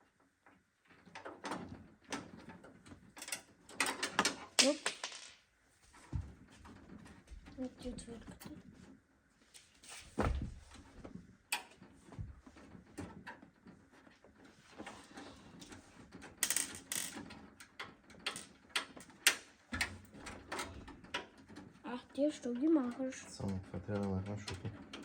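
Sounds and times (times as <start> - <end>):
metallic clicks and knocks: 16.2 - 25.0.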